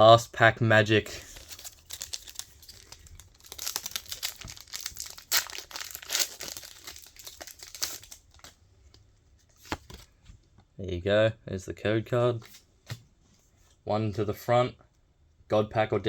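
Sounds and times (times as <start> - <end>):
foil wrapper crinkling and tearing: 1.2 - 8.6.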